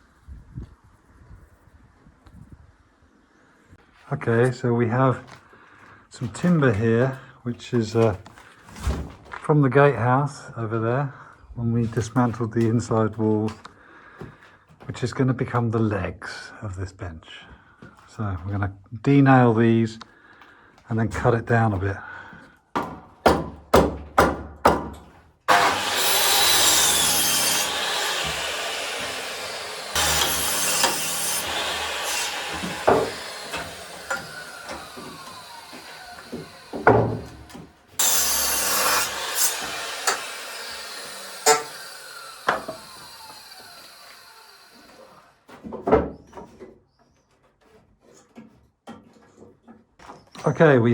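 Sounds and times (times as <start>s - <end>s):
power saw cutting wood: 25.5s - 45.4s
hammer knocks on timber: 35.8s - 37.7s.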